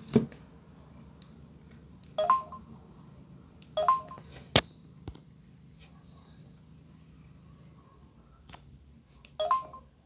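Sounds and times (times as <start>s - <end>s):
phone electronic chirps: 2.2s - 2.7s, 3.8s - 4.3s, 9.4s - 9.9s.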